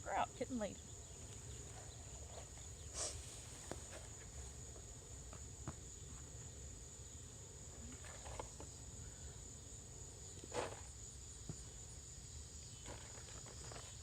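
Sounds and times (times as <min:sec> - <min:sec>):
insects trilling: 0:00.0 - 0:14.0.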